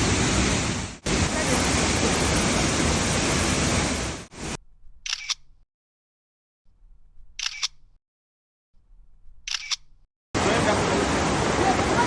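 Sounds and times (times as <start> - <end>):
waterfall rushing: 0.0 - 4.5, 10.4 - 12.0
camera shutter clicks: 5.0 - 5.5, 7.4 - 8.0, 9.4 - 10.0.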